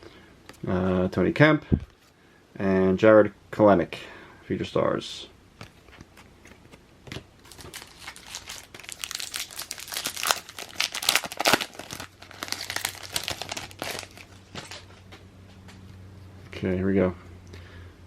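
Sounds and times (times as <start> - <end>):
foil wrapper crinkling and tearing: 7.4 - 14.8.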